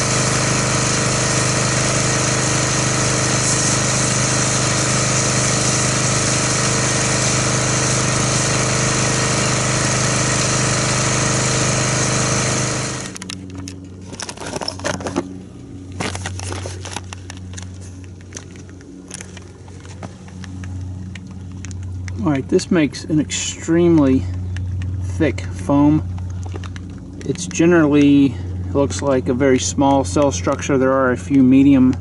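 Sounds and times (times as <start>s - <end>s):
pressure washer spraying foam: 0.0s - 13.2s.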